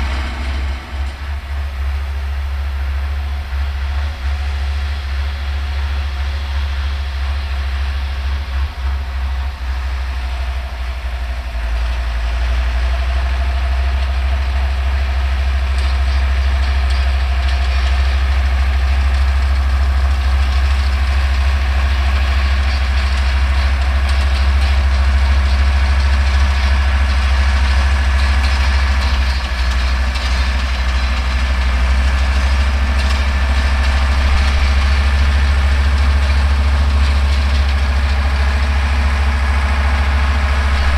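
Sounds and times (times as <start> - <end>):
baler mechanical clatter: 0.0 - 40.9
tractor diesel engine running: 0.0 - 40.9.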